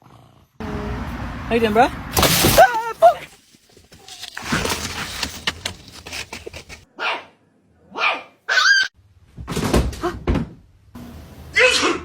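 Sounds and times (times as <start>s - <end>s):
clattering and scuffling: 2.1s - 6.9s
dog barking high-pitched: 6.9s - 7.3s, 7.9s - 8.9s.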